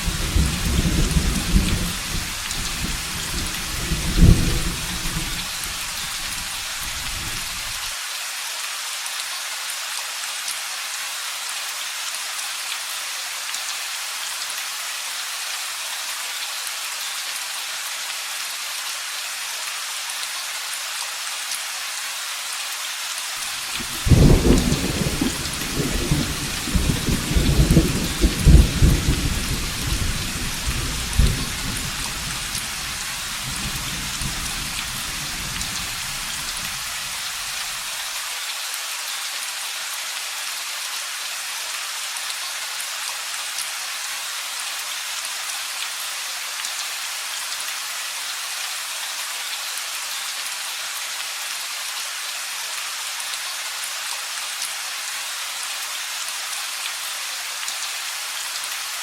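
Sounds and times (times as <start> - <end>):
heavy rain hissing: 0.0 - 8.9, 14.1 - 40.7
thunder rumbling: 0.1 - 7.8, 23.7 - 36.9.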